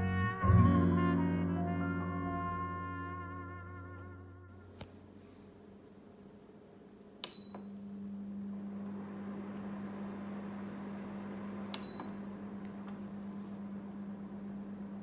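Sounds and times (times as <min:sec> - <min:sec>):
dehumidifier humming: 0:04.6 - 0:15.0
control panel beep: 0:07.2 - 0:07.7, 0:11.8 - 0:12.2.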